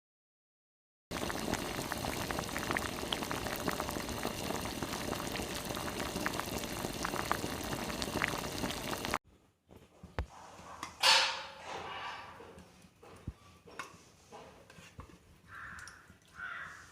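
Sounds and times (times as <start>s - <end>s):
liquid boiling in a pot: 1.1s - 9.2s.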